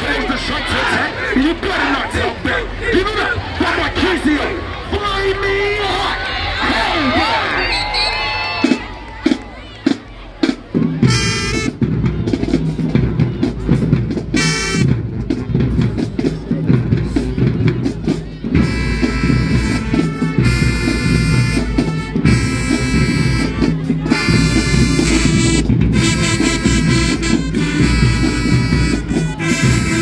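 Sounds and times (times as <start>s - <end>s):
heavy drumming: 8.6s - 30.0s
horns playing loud chords: 11.0s - 12.8s, 14.3s - 15.7s, 18.5s - 30.0s.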